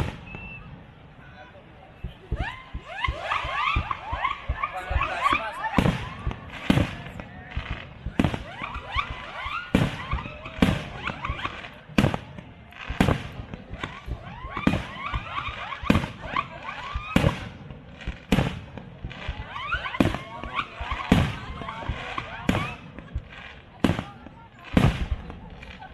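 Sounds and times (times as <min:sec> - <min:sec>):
rising firework whistles: 0:00.0 - 0:00.8, 0:08.2 - 0:12.3, 0:12.9 - 0:18.7, 0:19.3 - 0:22.8
firework shells bursting with bangs: 0:00.0 - 0:01.0, 0:02.3 - 0:25.9.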